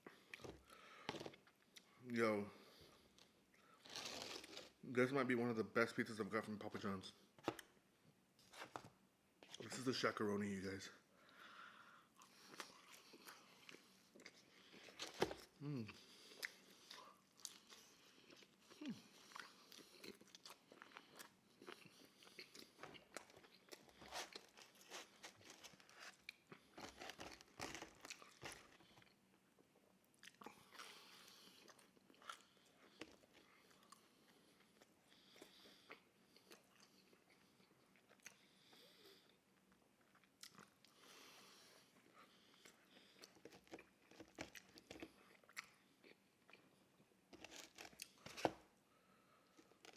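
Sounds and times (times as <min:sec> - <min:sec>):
chewing and biting pizza: 0:03.8 - 0:04.8, 0:12.2 - 0:38.9, 0:39.6 - 0:48.6.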